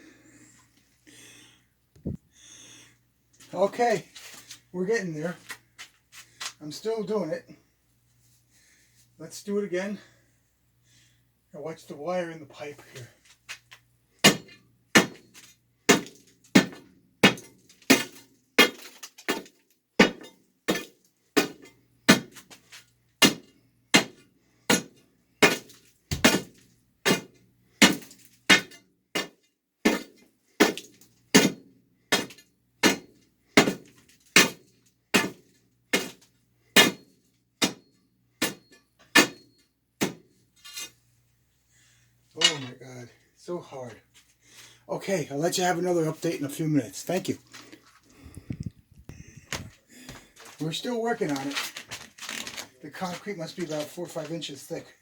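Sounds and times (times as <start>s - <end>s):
pry bar striking concrete: 14.2s - 15.3s, 15.9s - 22.4s, 23.2s - 26.5s, 27.1s - 34.6s, 35.2s - 36.2s, 36.8s - 40.2s.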